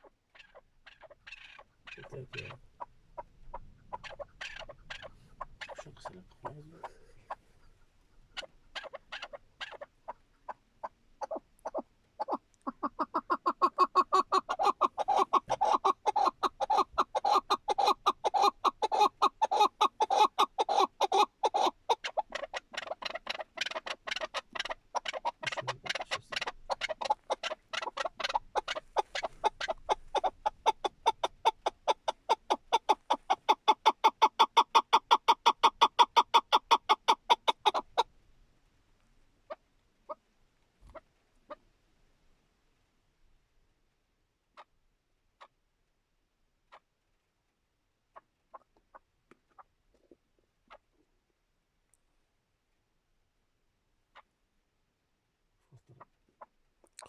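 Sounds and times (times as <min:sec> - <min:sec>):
partridge clucking calls: 0:00.0 - 0:38.1.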